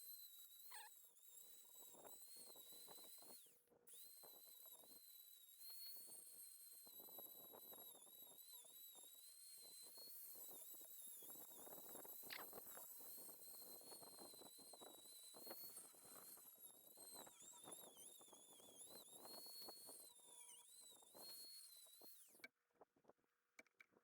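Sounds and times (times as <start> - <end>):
thin high wavering whine: 0.1 - 22.4.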